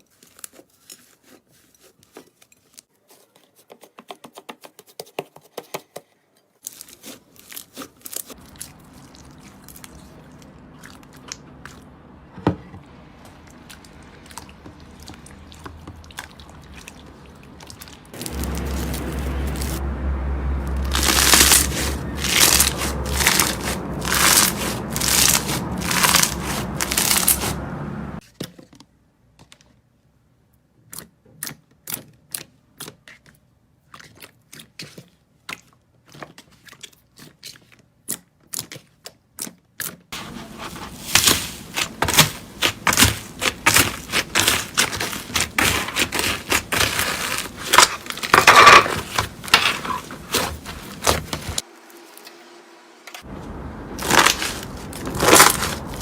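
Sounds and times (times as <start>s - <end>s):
slime crackling and popping: 20.8s - 27.5s, 41.0s - 51.6s, 54.0s - 56.0s.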